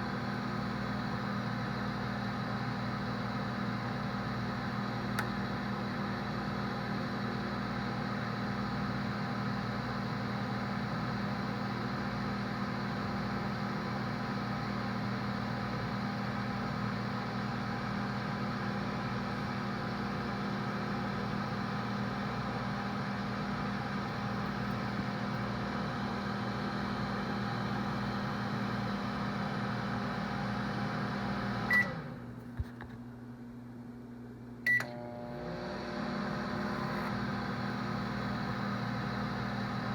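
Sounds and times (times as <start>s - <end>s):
microwave oven humming: 0.0s - 39.9s
microwave beep: 31.3s - 32.2s, 34.6s - 35.4s.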